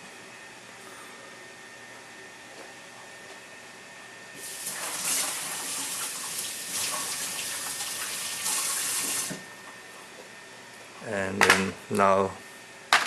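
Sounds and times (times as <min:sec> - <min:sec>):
tap water running: 0:04.4 - 0:09.5.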